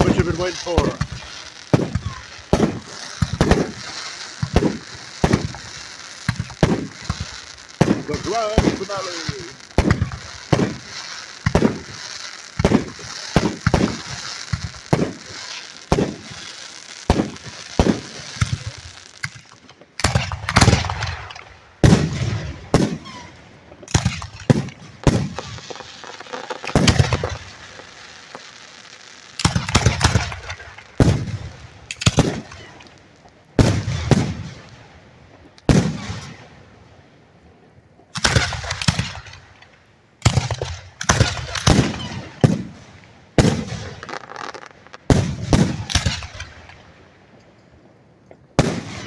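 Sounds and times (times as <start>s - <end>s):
firework booms with rumble: 0.0s - 12.0s, 12.6s - 16.4s, 17.1s - 18.9s, 20.0s - 27.8s, 29.4s - 32.8s, 33.6s - 35.0s, 35.7s - 36.8s, 40.2s - 46.8s, 48.6s - 49.0s
firework crackling hiss: 0.0s - 34.4s, 43.4s - 46.5s
firework bangs: 0.0s - 36.9s, 38.1s - 47.0s, 48.5s - 49.0s.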